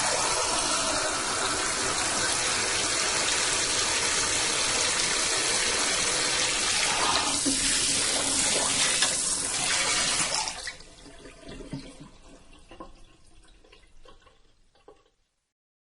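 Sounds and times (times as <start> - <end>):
sink sprayer hissing: 0.0 - 10.5.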